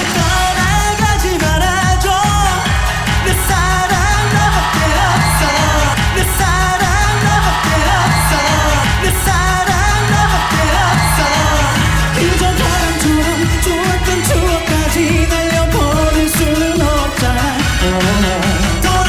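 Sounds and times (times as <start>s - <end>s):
band with bass beat and cymbals: 0.0s - 19.0s
man singing pop ballad: 0.0s - 19.0s.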